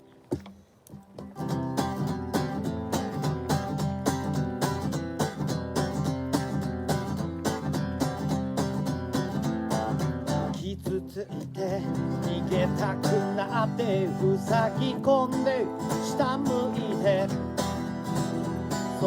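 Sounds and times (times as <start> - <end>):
acoustic guitar strumming: 1.0 - 19.0.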